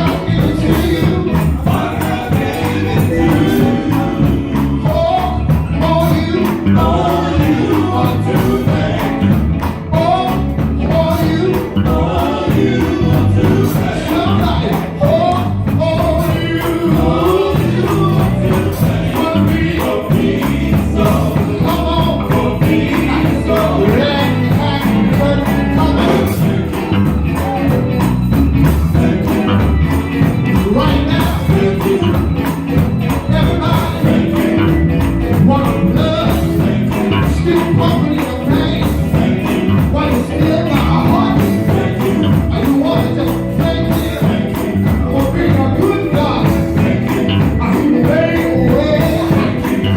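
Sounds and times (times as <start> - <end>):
bass guitar: 0.0 - 49.9
electric guitar: 0.0 - 49.9
keyboards: 0.0 - 49.9
steady beat: 0.0 - 49.9
voices singing gospel: 0.0 - 49.9.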